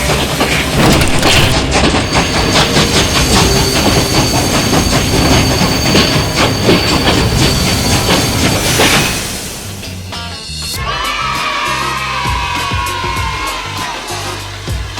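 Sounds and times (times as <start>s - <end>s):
train wheels clattering over rail joints: 0.0s - 10.3s
high-pitched wheel squeal: 2.2s - 9.3s.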